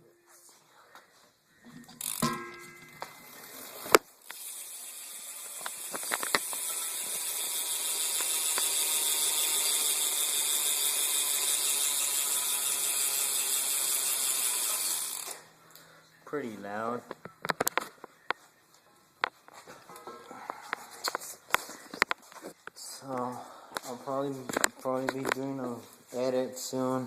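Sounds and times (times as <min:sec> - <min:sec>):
bike hub ratcheting buzz: 0:02.0 - 0:03.4, 0:04.2 - 0:15.5.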